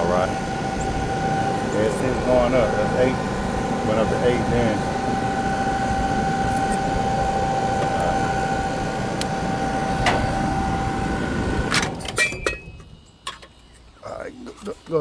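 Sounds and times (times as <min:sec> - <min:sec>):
motor whine: 0:00.0 - 0:12.2
air conditioner unit humming: 0:00.0 - 0:15.0.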